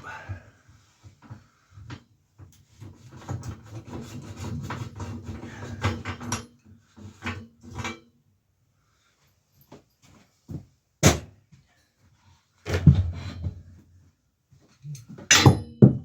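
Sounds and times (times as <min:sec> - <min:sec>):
hand tools rubbing and scraping: 0:02.8 - 0:06.3.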